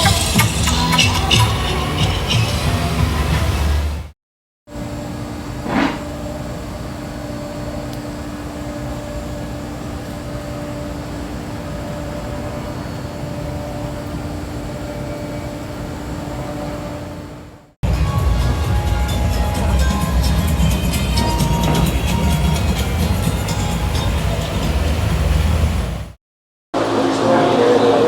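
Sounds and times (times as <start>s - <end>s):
steady mechanical hum: 4.7s - 26.2s.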